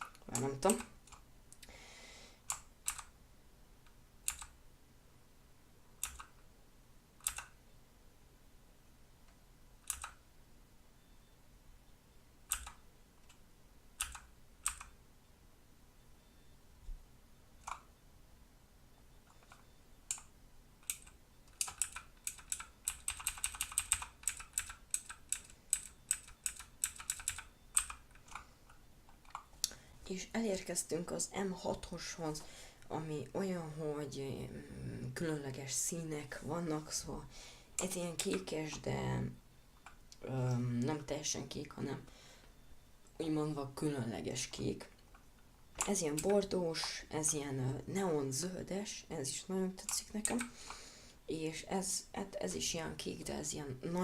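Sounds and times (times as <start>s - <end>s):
mechanical keyboard key clicks: 9.9s - 10.2s, 12.5s - 12.8s, 14.0s - 14.9s, 19.5s - 28.4s.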